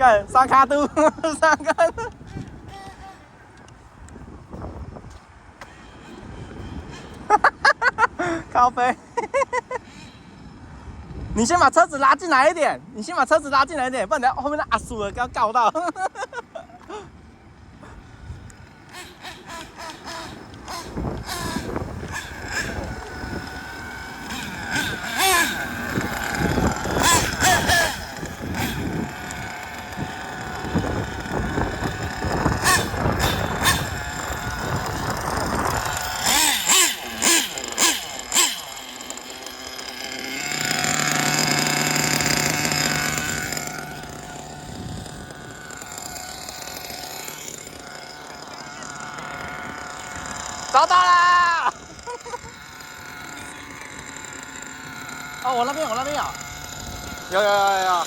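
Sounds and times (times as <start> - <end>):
small nitro engine revving: 16.8 - 58.0.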